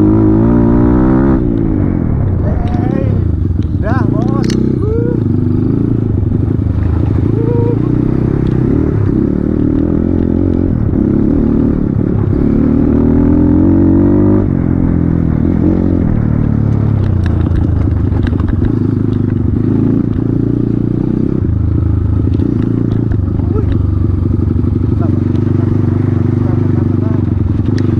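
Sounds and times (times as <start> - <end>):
motorcycle engine revving: 0.0 - 27.9
knocks and clatter: 16.7 - 20.3.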